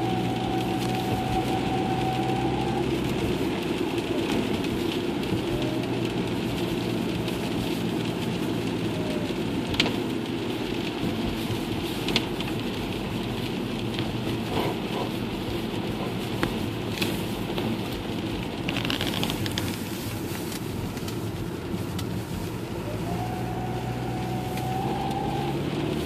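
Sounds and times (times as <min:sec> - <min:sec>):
car engine droning: 0:00.0 - 0:10.8, 0:20.6 - 0:26.0.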